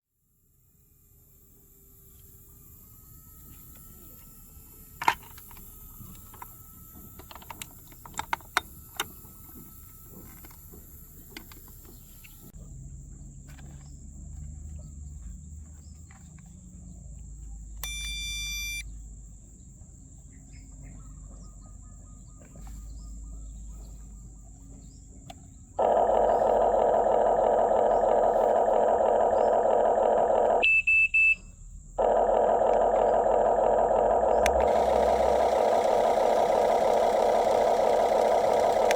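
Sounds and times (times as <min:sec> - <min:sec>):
loud electric whirring: 0:01.2 - 0:12.5, 0:25.8 - 0:30.7, 0:32.0 - 0:38.9
short electronic beep: 0:17.8 - 0:18.8.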